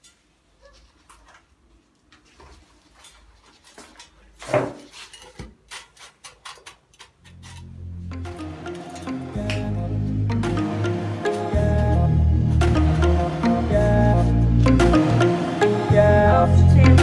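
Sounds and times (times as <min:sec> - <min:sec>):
background music: 0:07.4 - 0:17.0.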